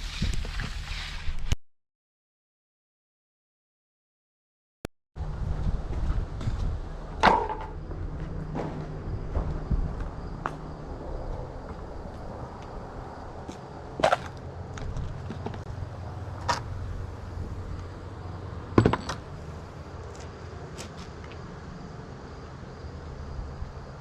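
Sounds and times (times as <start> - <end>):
low steady rumble: 14.6 - 20.0.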